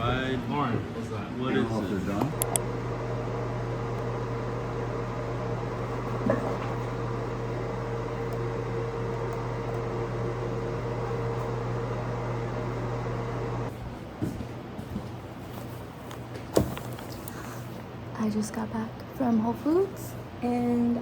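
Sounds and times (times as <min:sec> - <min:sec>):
appliance motor humming: 0:01.8 - 0:13.8.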